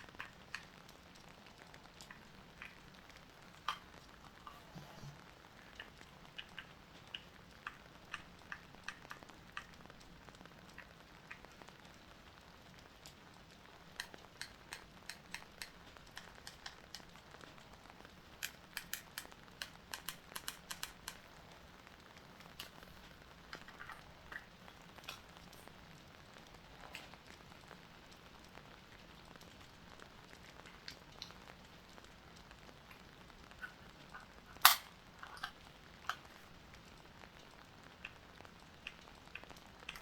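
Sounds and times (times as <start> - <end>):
sharp clicks and ticks: 0.0 - 4.5, 5.7 - 11.8, 13.0 - 21.4, 29.3 - 40.0.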